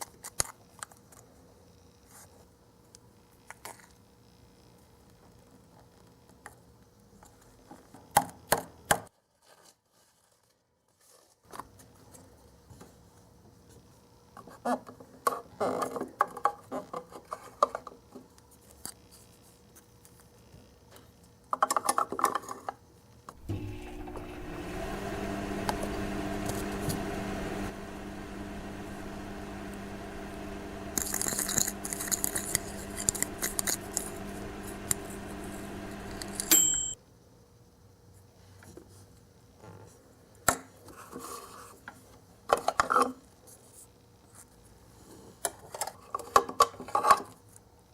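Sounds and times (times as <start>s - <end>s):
steady low hum: 23.4s - 37.0s.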